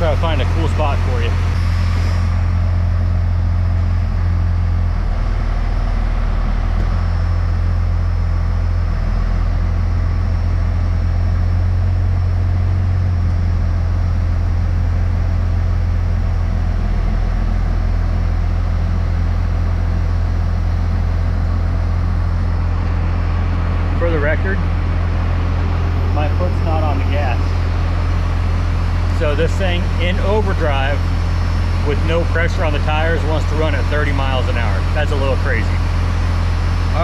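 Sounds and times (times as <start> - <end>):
diesel engine idling: 0.0 - 37.0.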